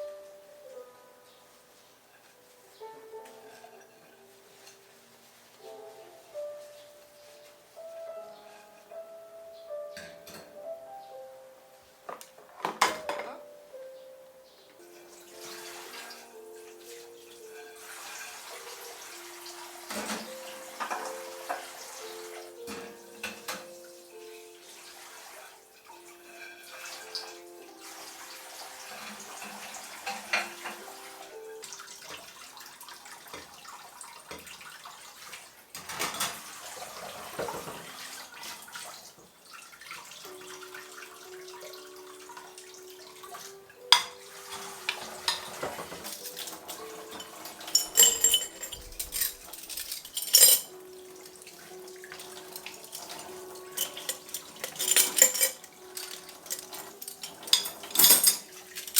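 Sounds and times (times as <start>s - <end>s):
soft melody of held notes: 0.0s - 32.0s, 40.2s - 58.9s
dishes and cutlery clinking: 2.1s - 5.0s, 9.8s - 10.6s, 12.1s - 13.5s, 19.4s - 24.5s, 25.9s - 27.5s, 28.8s - 31.4s, 35.7s - 37.9s, 40.0s - 58.9s
tap water running into sink: 15.0s - 58.9s.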